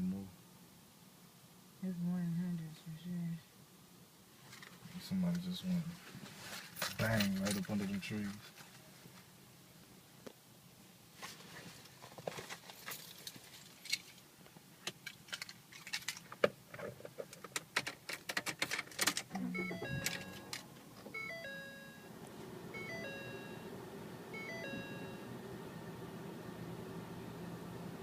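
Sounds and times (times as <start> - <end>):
sharp clicks and rattles: 14.8 - 19.4
electronic chime: 19.4 - 20.6, 21.2 - 22.1, 22.8 - 23.7, 24.4 - 25.3.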